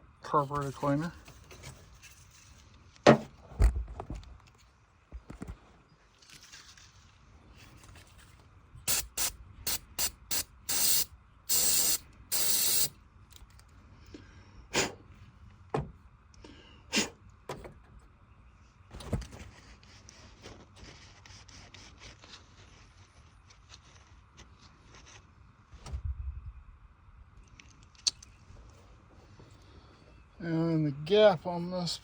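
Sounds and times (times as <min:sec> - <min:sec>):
aerosol spray hissing: 0:08.9 - 0:12.9.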